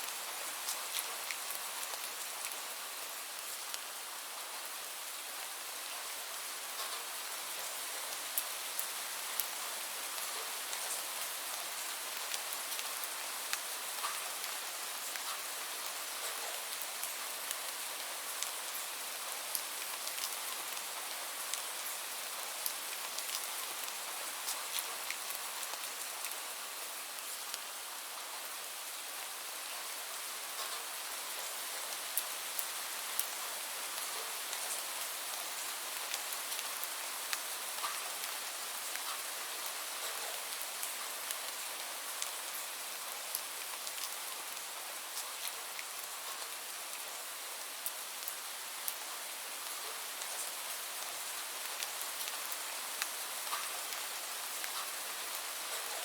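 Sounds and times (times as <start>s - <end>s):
raindrops ticking on a surface: 0.0s - 56.0s
steady rain: 0.0s - 56.0s.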